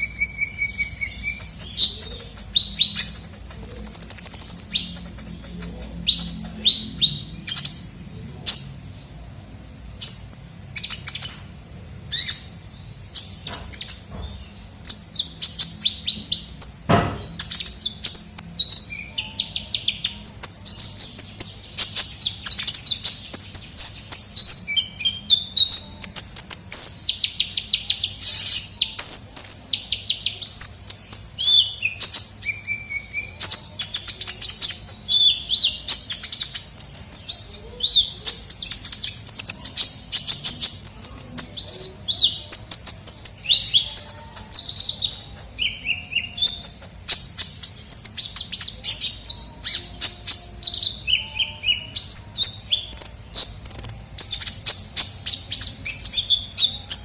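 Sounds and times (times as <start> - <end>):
sunbird chirping and trilling: 0.0 - 57.0
single knock: 16.9 - 17.4.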